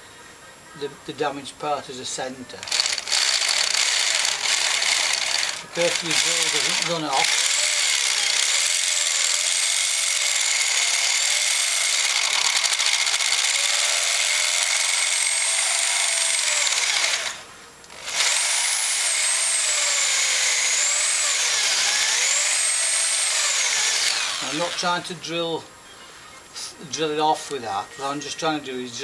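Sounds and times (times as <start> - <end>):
electric drill boring into screw: 2.6 - 25.0.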